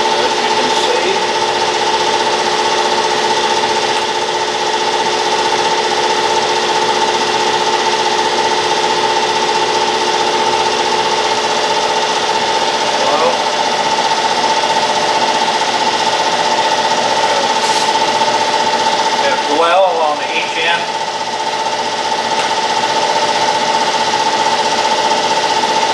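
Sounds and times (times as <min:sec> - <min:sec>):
grinder machine whining: 0:00.0 - 0:25.9.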